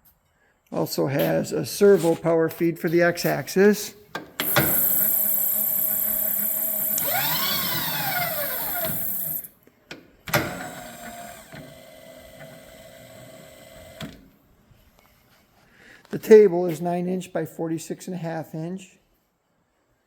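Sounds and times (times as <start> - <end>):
power feed motor whine: 4.4 - 9.5.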